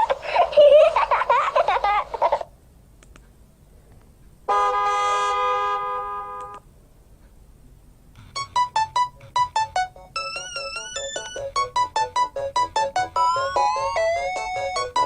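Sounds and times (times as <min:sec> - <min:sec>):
ringtone melody of short notes: 0:08.2 - 0:15.0
synthesized ringtone chord: 0:08.2 - 0:15.0.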